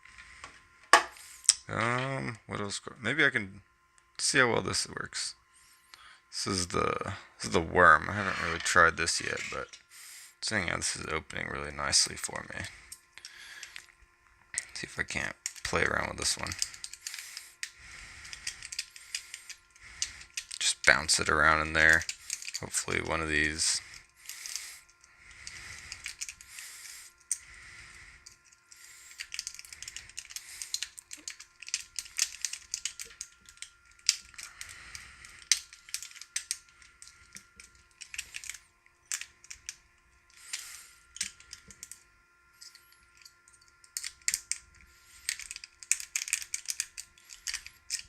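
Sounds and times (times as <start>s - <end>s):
metallic clicking and scraping of lock pins: 16.4s - 17.7s, 18.3s - 20.7s, 21.9s - 23.1s, 24.2s - 26.5s, 28.2s - 42.0s, 42.6s - 48.0s.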